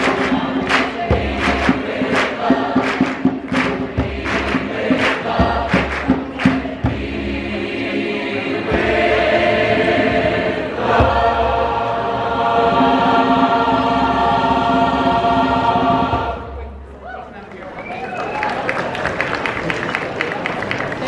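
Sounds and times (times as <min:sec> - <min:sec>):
choir singing sustained chords: 0:00.0 - 0:16.8.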